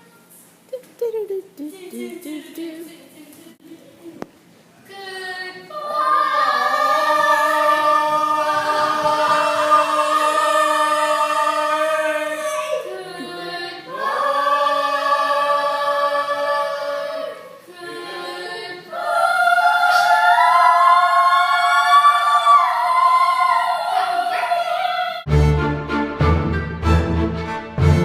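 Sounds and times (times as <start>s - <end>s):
group singing a cappella: 4.9s - 25.3s.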